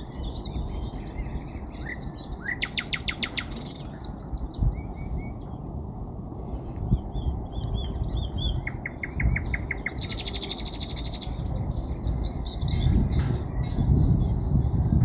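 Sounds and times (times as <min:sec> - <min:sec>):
sparrow chirping and singing: 0:00.0 - 0:05.6, 0:06.9 - 0:15.0
steady low rumble: 0:03.2 - 0:15.0.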